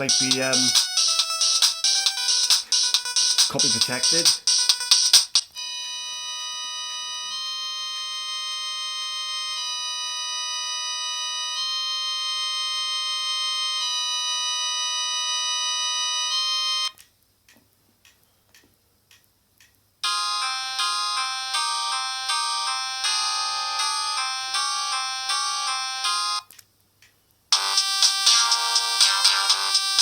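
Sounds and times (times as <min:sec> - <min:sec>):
phone ringtone playing: 0:00.0 - 0:16.9, 0:20.0 - 0:26.5, 0:27.6 - 0:30.0
faint clicks: 0:17.0 - 0:19.8.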